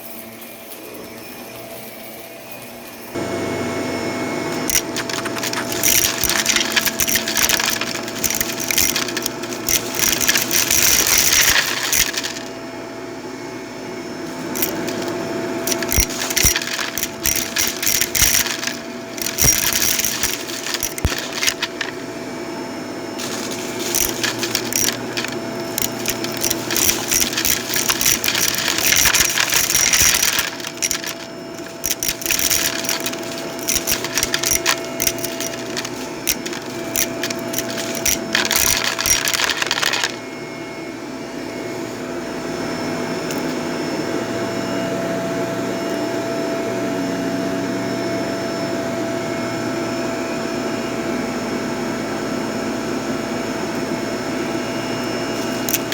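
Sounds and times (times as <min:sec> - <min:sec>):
vacuum cleaner motor whine: 0:00.0 - 0:55.9
debris rattling through vacuum: 0:04.6 - 0:12.6, 0:14.3 - 0:22.1, 0:23.2 - 0:40.2, 0:55.3 - 0:55.9.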